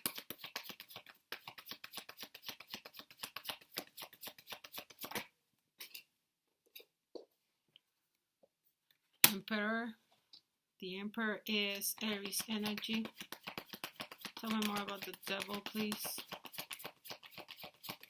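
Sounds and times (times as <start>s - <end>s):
cards being shuffled: 0.0s - 5.3s, 12.0s - 18.0s.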